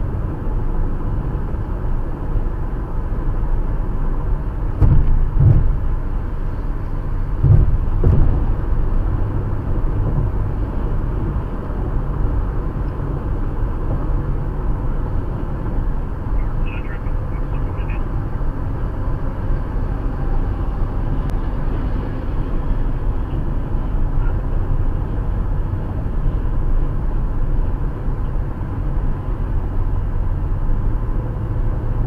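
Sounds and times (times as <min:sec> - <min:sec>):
car cabin road noise: 0:00.0 - 0:32.0
short thumps: 0:07.4 - 0:08.5.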